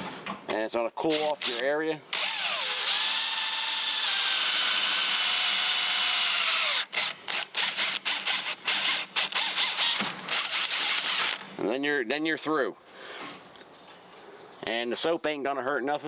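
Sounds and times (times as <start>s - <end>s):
power drill boring through metal: 1.1s - 11.5s.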